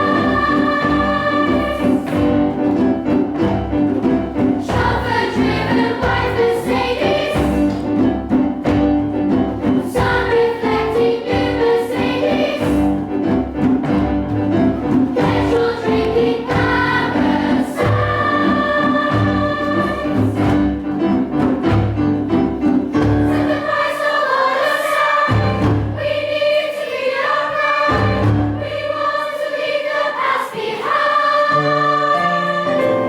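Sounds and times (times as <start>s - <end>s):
choir singing held chords: 0.0s - 2.8s, 4.4s - 8.3s, 9.6s - 13.3s, 15.0s - 20.8s, 23.2s - 33.0s.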